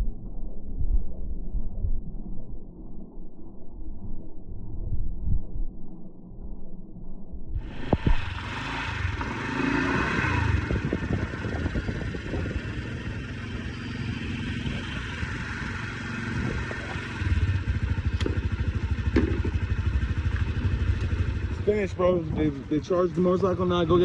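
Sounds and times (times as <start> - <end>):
motorcycle engine running: 7.6 - 24.0.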